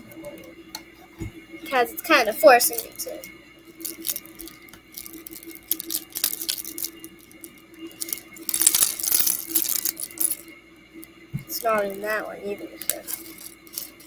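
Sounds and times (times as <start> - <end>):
plastic bag crinkling: 2.7 - 10.4, 11.5 - 12.2, 12.8 - 14.0
plastic bricks clattering: 3.8 - 10.4, 11.5 - 12.2, 12.8 - 14.0.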